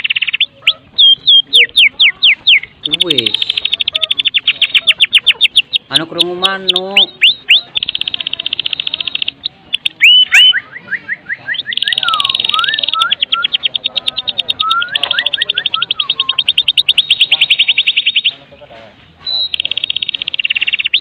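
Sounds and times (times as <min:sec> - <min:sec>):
bird rattling call: 0:00.0 - 0:10.5
bird whistled notes: 0:00.0 - 0:18.4, 0:19.2 - 0:21.0.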